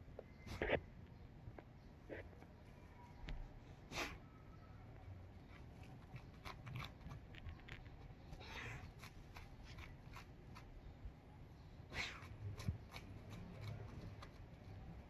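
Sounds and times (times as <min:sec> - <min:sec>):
dog chewing grass: 0:05.4 - 0:10.8, 0:12.2 - 0:14.8.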